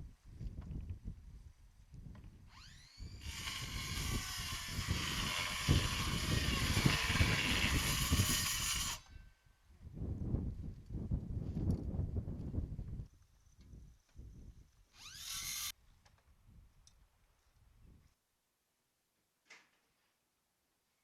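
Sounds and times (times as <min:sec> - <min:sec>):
power saw running: 0:15.0 - 0:15.7.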